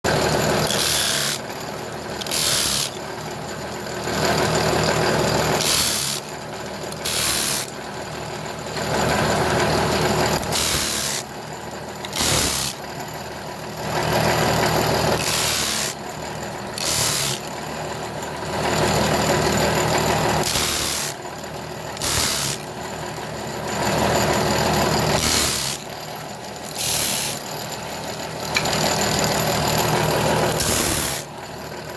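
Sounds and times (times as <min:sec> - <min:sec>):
electric sander running: 0:00.3 - 0:01.6, 0:26.6 - 0:27.6
wood rasping against sander: 0:00.3 - 0:01.6, 0:02.2 - 0:03.0, 0:07.0 - 0:07.8, 0:15.1 - 0:16.0, 0:24.0 - 0:25.8, 0:26.6 - 0:27.6, 0:28.5 - 0:31.3.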